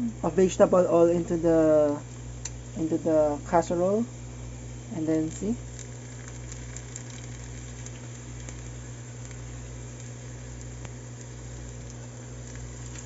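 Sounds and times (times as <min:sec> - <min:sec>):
steady low hum: 0:00.0 - 0:13.0
faint crackles: 0:04.1 - 0:13.0
oil sizzling in a pot: 0:04.2 - 0:13.0.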